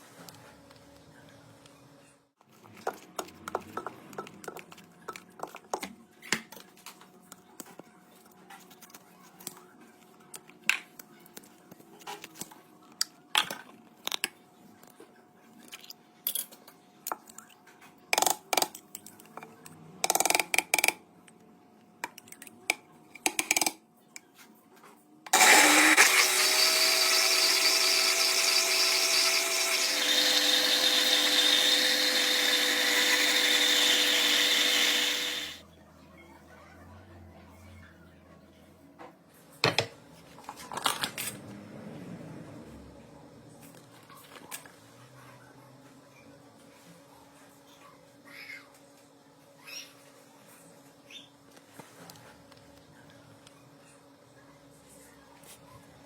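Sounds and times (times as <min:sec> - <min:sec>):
electric blender running: 0:25.3 - 0:35.6.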